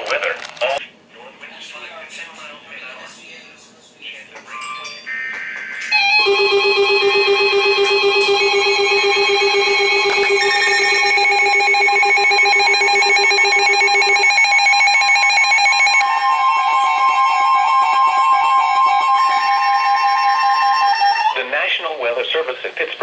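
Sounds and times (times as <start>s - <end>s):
weather radio alarms: 5.1s - 16.0s.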